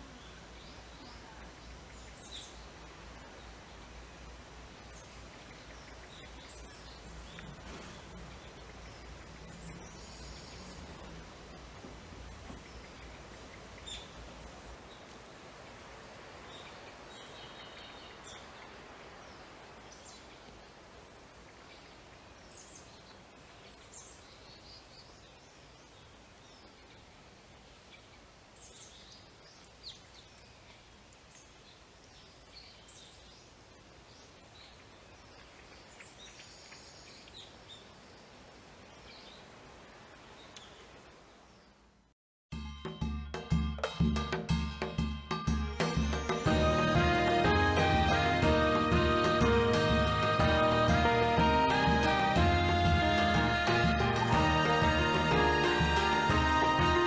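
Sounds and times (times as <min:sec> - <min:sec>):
birds chirping: 0:00.0 - 0:15.5, 0:45.6 - 0:57.0
soft steady hiss: 0:00.0 - 0:42.2.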